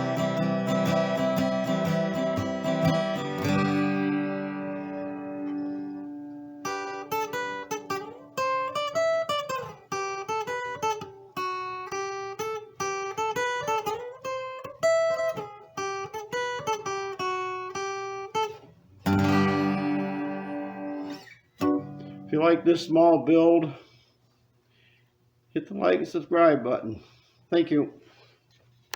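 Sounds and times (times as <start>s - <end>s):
acoustic guitar chord: 0.0s - 10.8s, 19.0s - 22.9s
plucked guitar melody: 0.0s - 22.8s.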